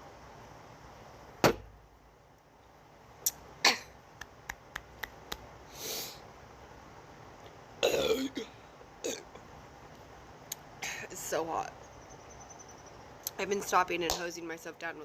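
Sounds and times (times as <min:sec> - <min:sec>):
breathy exhale: 0:05.7 - 0:06.2.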